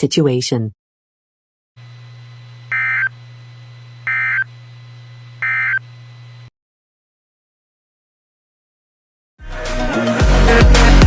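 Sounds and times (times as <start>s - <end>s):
steady low hum: 1.8s - 6.5s.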